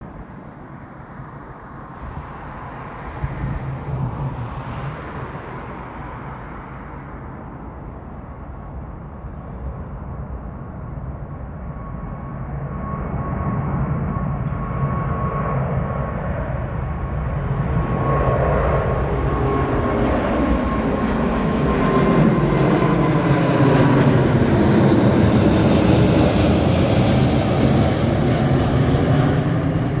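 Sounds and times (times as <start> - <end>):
jet engines roaring: 0.0 - 30.0.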